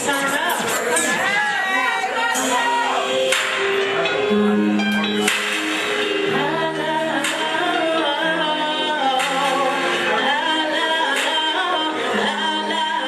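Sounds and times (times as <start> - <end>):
woman singing: 0.0 - 3.0, 6.2 - 13.0
backing track with sharp beat: 0.0 - 13.0.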